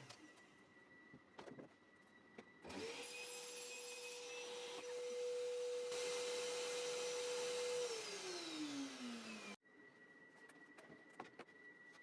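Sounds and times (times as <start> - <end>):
power tool motor running: 5.9 - 9.6.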